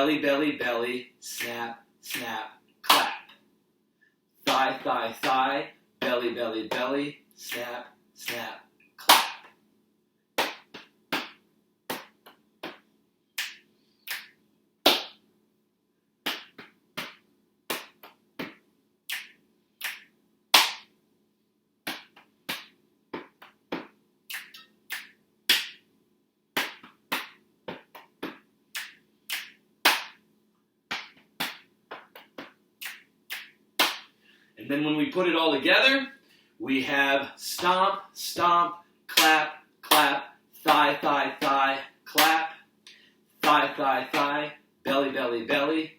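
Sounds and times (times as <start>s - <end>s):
hand claps: 1.4s - 3.3s, 4.5s - 5.4s, 7.5s - 9.6s, 10.4s - 15.2s, 16.3s - 20.9s, 21.9s - 25.9s, 26.6s - 30.2s, 30.9s - 34.2s, 39.1s - 44.4s
slaps on thighs and belly: 2.9s - 3.2s, 4.5s - 5.4s, 7.5s - 9.6s, 10.4s - 15.2s, 16.2s - 20.9s, 21.8s - 25.8s, 26.6s - 30.2s, 30.9s - 34.2s, 39.1s - 41.6s, 42.2s - 42.4s, 43.4s - 44.4s
finger snaps: 13.4s - 14.4s, 17.8s - 20.9s, 24.3s - 25.8s, 26.6s - 30.2s, 30.9s - 34.1s.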